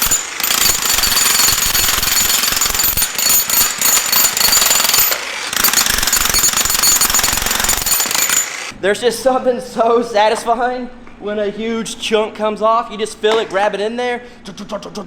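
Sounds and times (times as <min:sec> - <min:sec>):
jackhammer breaking concrete: 0:00.0 - 0:08.8.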